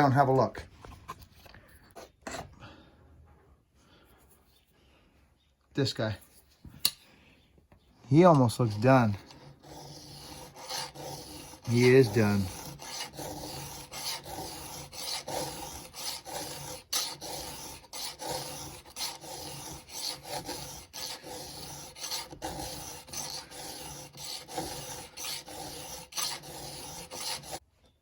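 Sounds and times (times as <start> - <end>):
file rasping on steel: 8.3 - 27.6.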